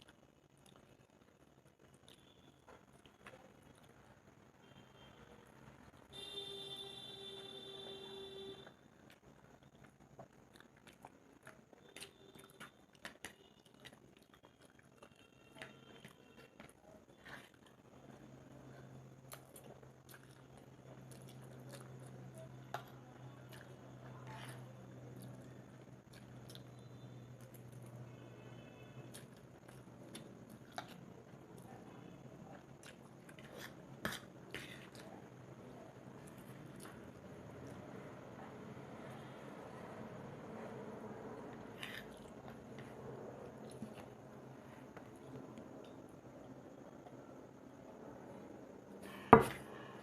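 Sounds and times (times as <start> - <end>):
close chewing with mouth clicks: 0.0 - 4.0, 8.9 - 27.9, 29.1 - 31.8, 32.5 - 35.2, 41.4 - 44.2
wet eating sounds: 9.0 - 27.9, 29.0 - 31.8, 32.6 - 35.4, 41.4 - 46.0.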